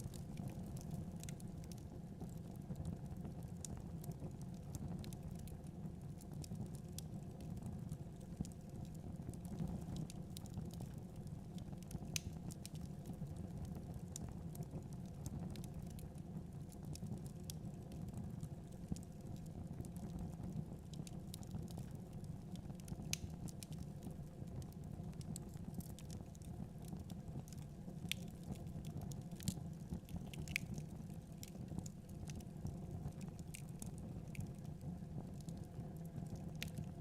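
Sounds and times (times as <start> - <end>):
low rumble of fire: 0.0 - 37.0
wood fire crackling: 0.0 - 37.0.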